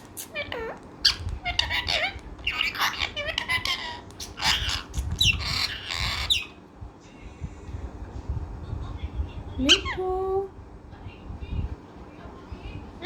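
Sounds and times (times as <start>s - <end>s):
parrot screeching: 0.0s - 6.6s
parrot squawking: 0.0s - 6.6s.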